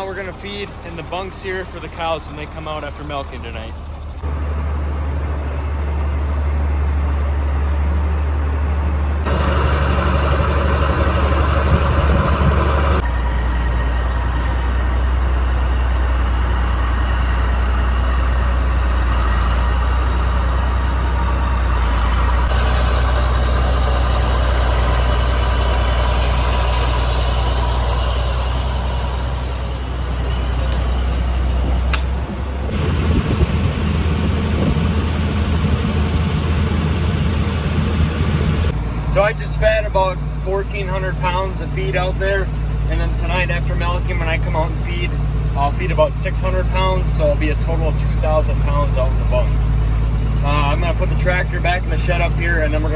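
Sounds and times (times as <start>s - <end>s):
tractor engine running: 9.2s - 39.0s.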